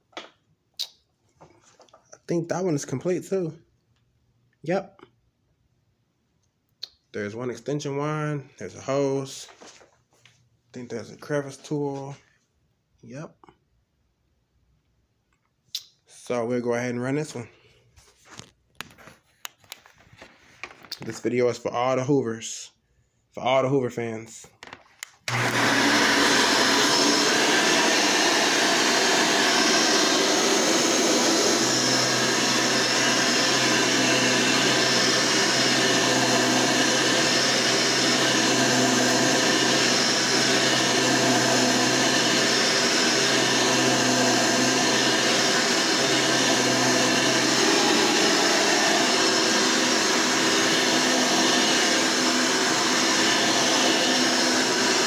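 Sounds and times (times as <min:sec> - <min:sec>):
vacuum cleaner running: 0:25.3 - 0:55.0.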